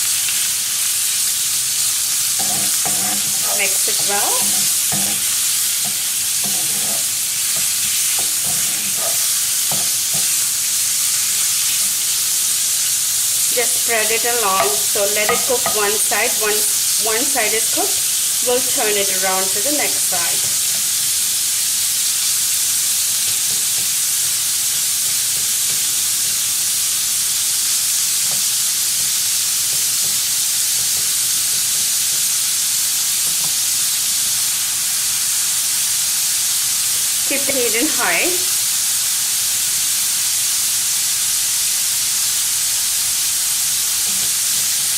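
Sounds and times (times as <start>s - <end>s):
food sizzling in a pan: 0.0s - 44.9s
utensil scraping and knocking pan: 2.4s - 10.4s, 14.2s - 16.0s.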